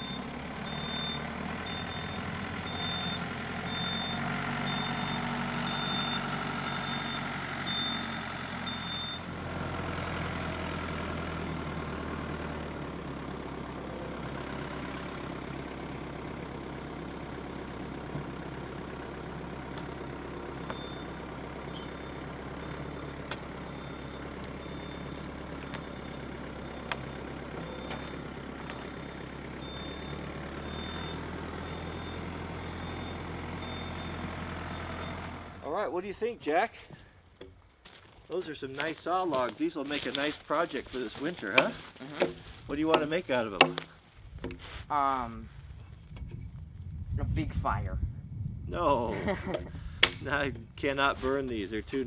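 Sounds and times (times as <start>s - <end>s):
reversing alarm beeping: 0.0s - 9.3s, 20.6s - 35.4s
heavy vehicle engine running: 0.0s - 35.8s.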